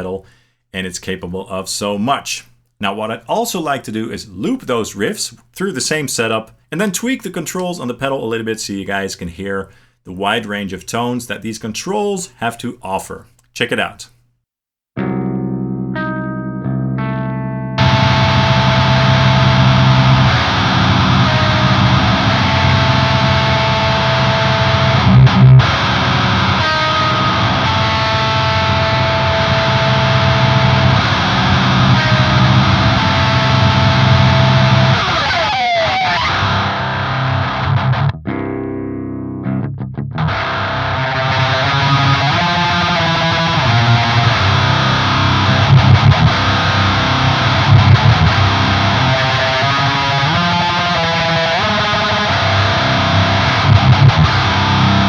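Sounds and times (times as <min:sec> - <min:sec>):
distorted electric guitar riffs: 0:15.0 - 0:55.0.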